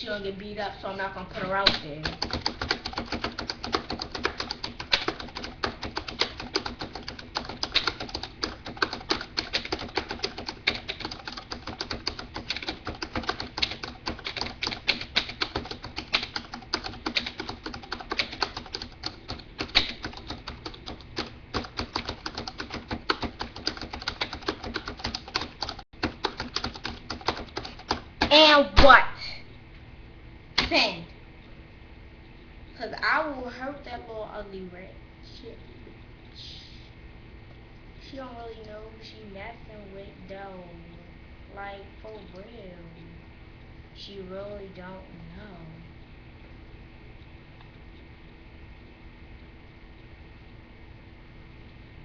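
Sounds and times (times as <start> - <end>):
keyboard typing: 1.5 - 28.4.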